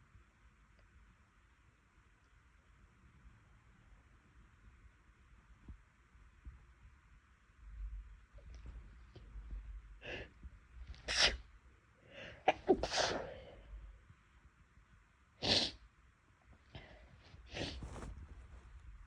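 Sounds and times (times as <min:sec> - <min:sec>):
person breathing: 0:09.9 - 0:10.5, 0:12.0 - 0:14.0, 0:16.7 - 0:18.7
person sneezing: 0:11.0 - 0:11.4, 0:12.2 - 0:13.5, 0:15.4 - 0:15.8.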